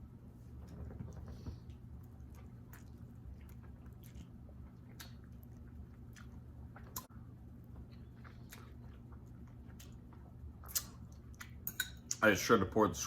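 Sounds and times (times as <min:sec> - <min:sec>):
low hum: 0:00.0 - 0:11.6
person chewing: 0:01.7 - 0:12.2
mouth smacks and clicks: 0:10.6 - 0:12.2.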